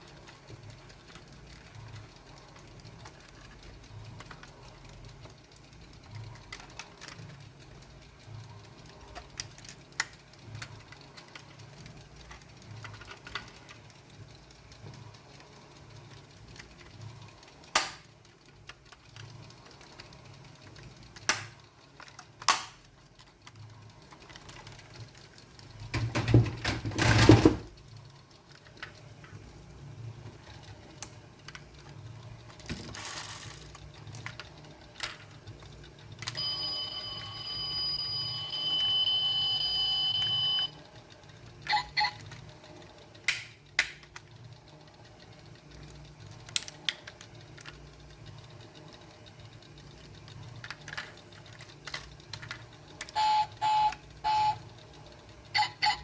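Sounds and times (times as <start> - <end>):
toy car parts clicking: 0.0 - 56.0
toy cars rattling: 8.5 - 14.0, 30.3 - 36.6, 45.8 - 48.4, 49.9 - 54.6.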